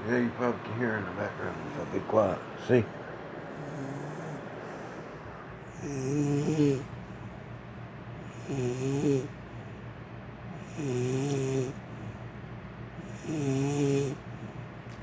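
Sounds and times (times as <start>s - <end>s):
woman snoring loudly: 5.7s - 6.9s, 8.3s - 9.4s, 10.6s - 11.8s, 13.1s - 14.2s.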